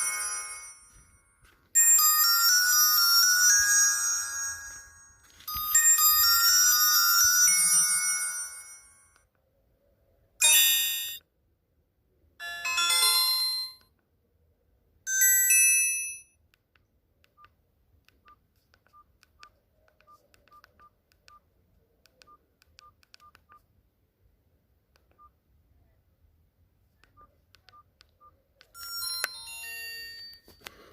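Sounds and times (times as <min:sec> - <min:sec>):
phone ringtone: 0:00.0 - 0:09.2, 0:10.4 - 0:11.2, 0:12.4 - 0:13.9, 0:15.1 - 0:16.3, 0:28.7 - 0:30.9.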